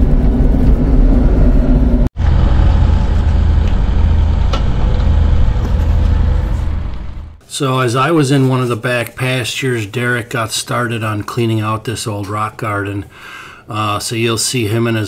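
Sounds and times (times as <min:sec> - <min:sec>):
diesel engine running: 0:00.0 - 0:07.4.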